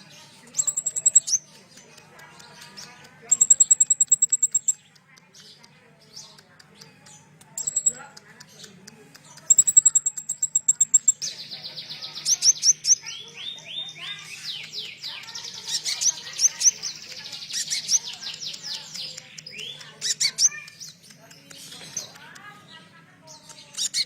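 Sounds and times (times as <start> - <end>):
songbird singing: 0.0 - 24.0
fast high bird trill: 0.5 - 1.5, 3.3 - 4.8, 7.6 - 8.0, 9.5 - 20.9.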